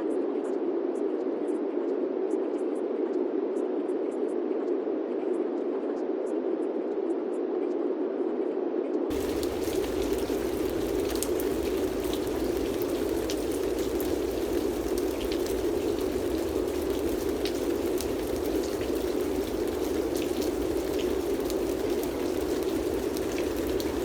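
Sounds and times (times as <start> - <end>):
dense white noise hiss: 9.1 - 24.0.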